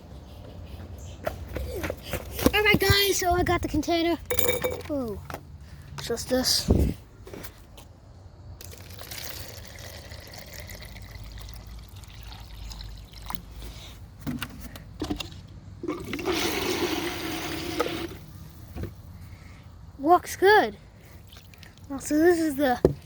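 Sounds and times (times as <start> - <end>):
water trickling and pouring: 8.6 - 13.6, 21.2 - 22.5
water gushing: 15.9 - 18.2.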